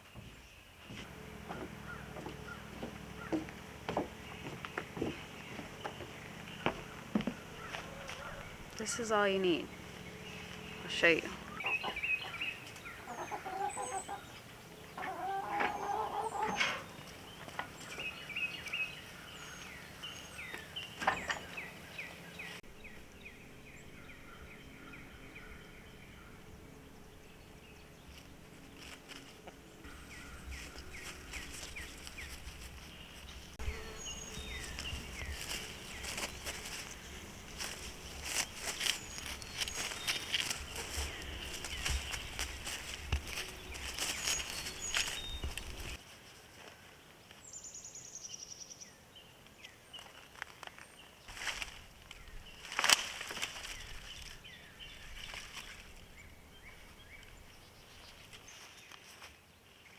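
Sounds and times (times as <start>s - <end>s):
hens clucking: 1.0s - 19.2s, 22.9s - 46.0s.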